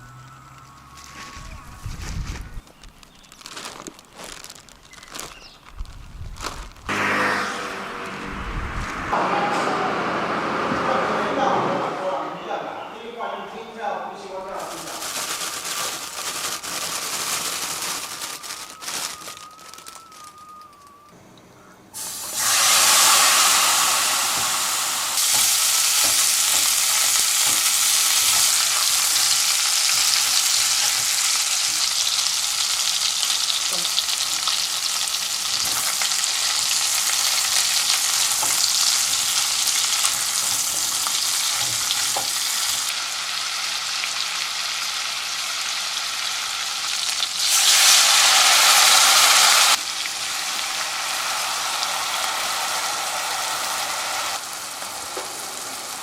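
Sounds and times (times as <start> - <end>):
sizzling hiss: 22.0 - 56.0.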